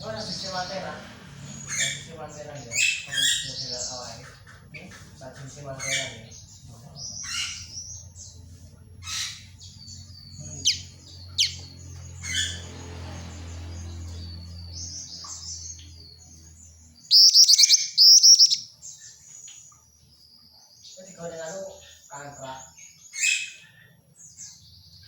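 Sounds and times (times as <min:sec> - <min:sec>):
rapid chattering bird calls: 0:00.0 - 0:25.0
bird chirps and whistles: 0:10.7 - 0:11.6, 0:17.0 - 0:18.8.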